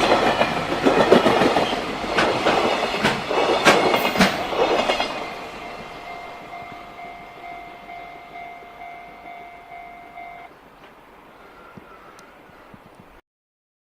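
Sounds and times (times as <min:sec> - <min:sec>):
level-crossing warning bell: 0:00.0 - 0:10.5
freight train rumble: 0:00.0 - 0:12.0.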